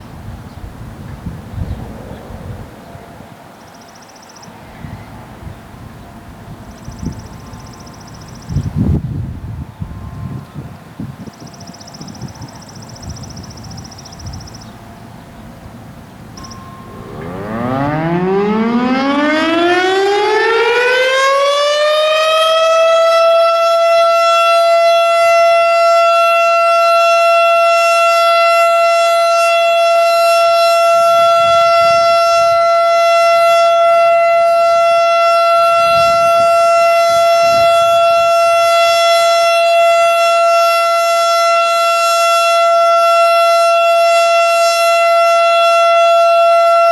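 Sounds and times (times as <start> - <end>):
warning siren rising steady tone: 16.4 - 46.9.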